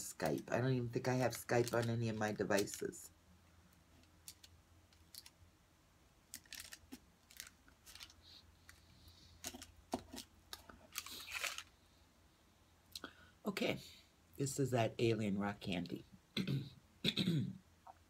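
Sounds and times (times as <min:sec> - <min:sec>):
small objects clicking and crinkling: 0:01.1 - 0:03.0, 0:03.7 - 0:05.4, 0:06.3 - 0:08.8, 0:09.4 - 0:11.7.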